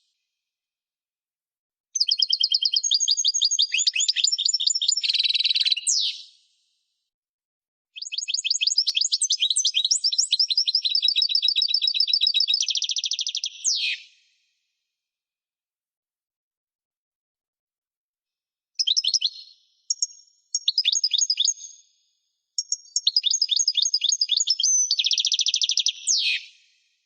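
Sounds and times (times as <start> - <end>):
songbird trilling: 2.0 - 6.2, 18.8 - 21.6, 22.6 - 26.4.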